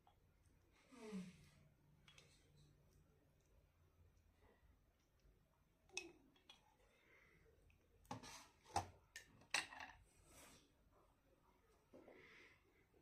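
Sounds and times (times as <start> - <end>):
cutlery and dishes clattering: 8.2 - 10.0.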